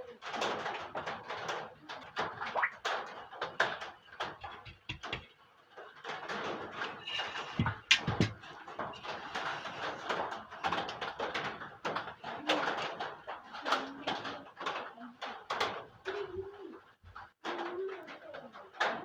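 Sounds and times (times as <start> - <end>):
curtain track knocks: 4.4 - 5.3, 6.4 - 9.6.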